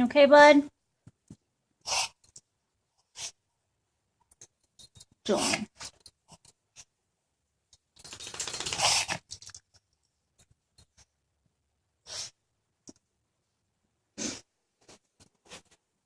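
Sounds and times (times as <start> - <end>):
pet reverse sneezing: 1.9 - 2.2, 5.3 - 5.8, 12.1 - 12.4, 14.2 - 14.5.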